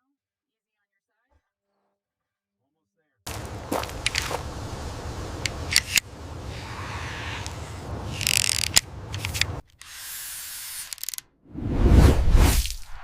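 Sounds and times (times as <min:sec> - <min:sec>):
tool clicks and taps: 0:03.3 - 0:04.6, 0:05.2 - 0:06.5, 0:07.3 - 0:09.6
low rumble and hiss: 0:03.3 - 0:09.6.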